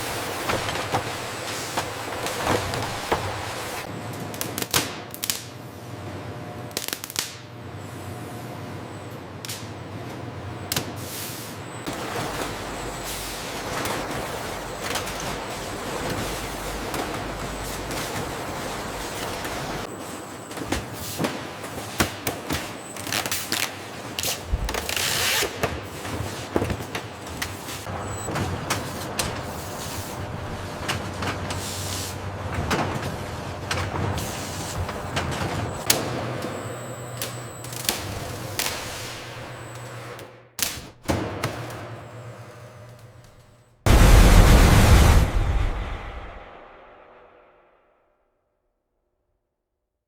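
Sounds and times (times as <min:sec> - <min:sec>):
machinery humming: 0:11.6 - 0:22.0, 0:27.8 - 0:40.2, 0:41.7 - 0:46.8.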